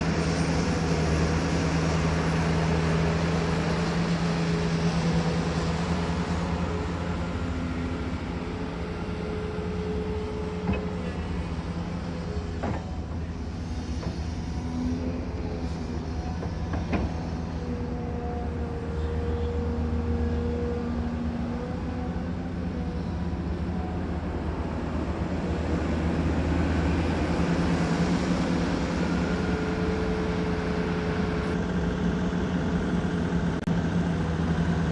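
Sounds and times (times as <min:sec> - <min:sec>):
diesel engine of heavy machinery: 0:00.0 - 0:34.9.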